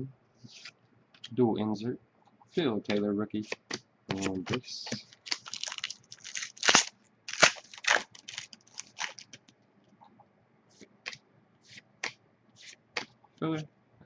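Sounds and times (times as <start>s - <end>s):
foil wrapper tearing and crinkling: 5.0s - 9.4s.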